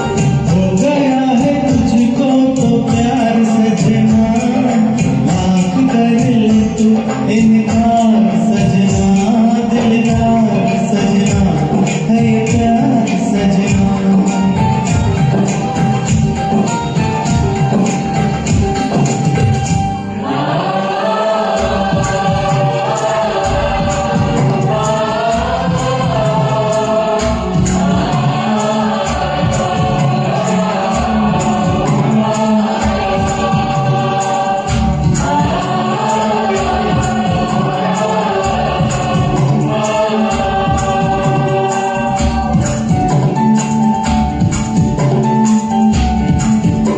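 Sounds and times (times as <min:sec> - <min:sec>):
wordless choir-like voices: 0:20.2 - 0:43.1.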